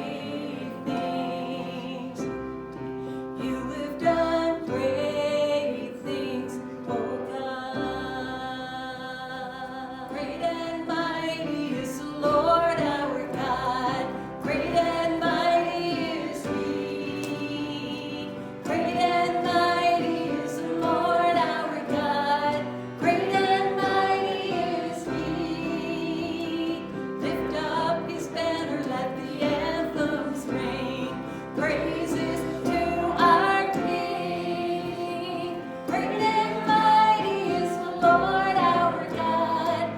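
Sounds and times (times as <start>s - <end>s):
worship song singing: 0.0s - 39.9s
instrumental accompaniment: 10.1s - 39.9s.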